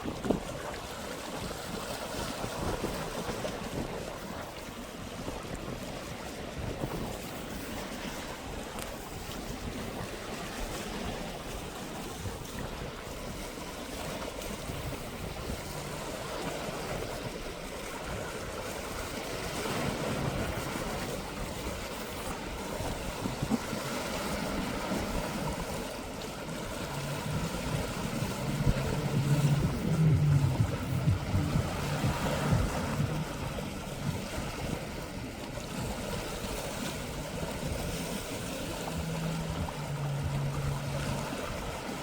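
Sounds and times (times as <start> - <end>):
sea waves washing: 0.0 - 42.0
wind noise on microphone: 0.0 - 42.0
low hum: 15.1 - 17.1, 26.2 - 42.0.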